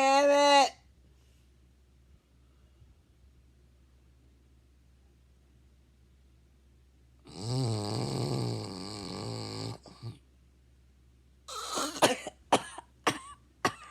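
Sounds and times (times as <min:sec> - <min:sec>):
person snoring: 0:07.3 - 0:10.2, 0:11.5 - 0:12.0
short snort: 0:11.5 - 0:12.0
person coughing: 0:11.5 - 0:13.9.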